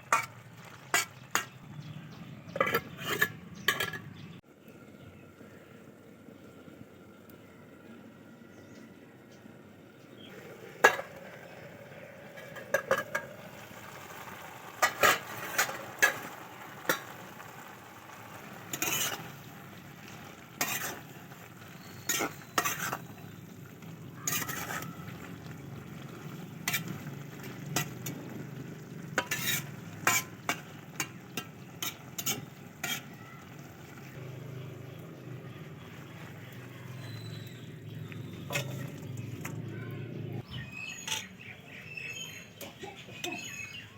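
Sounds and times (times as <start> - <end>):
spatula scraping pan: 0.0 - 1.7, 2.5 - 4.2, 10.3 - 17.2, 18.4 - 23.5, 24.1 - 34.2, 35.8 - 39.6
frying sizzle: 0.0 - 4.1, 10.2 - 39.8.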